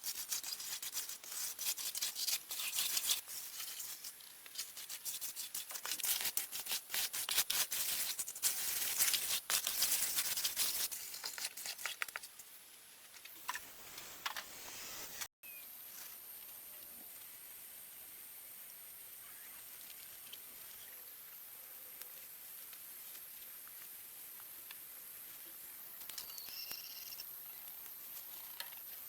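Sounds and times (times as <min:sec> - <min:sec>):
scraping and rustling strokes: 0:00.0 - 0:12.5, 0:13.1 - 0:15.3.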